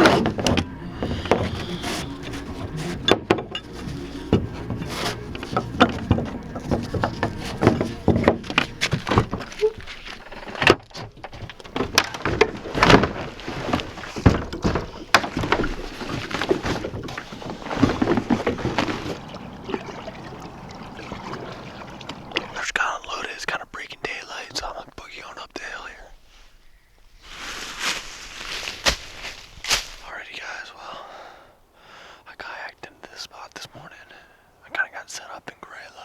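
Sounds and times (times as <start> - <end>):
knocks clunks and rattles: 0.0 - 22.6.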